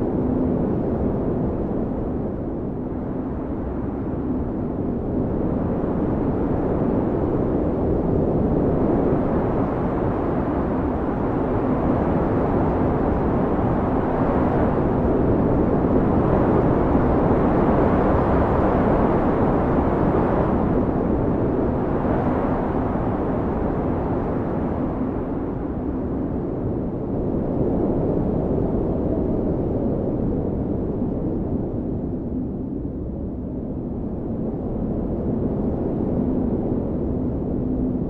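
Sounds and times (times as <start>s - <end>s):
howling blizzard wind: 0.0s - 38.0s.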